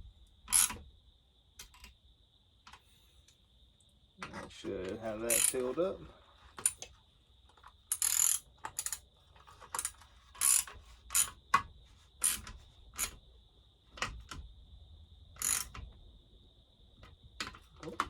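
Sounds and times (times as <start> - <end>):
ratchet wrench clicking: 0.5 - 0.8, 5.3 - 5.7, 7.9 - 9.0, 9.8 - 11.4, 12.2 - 13.2, 15.4 - 15.8.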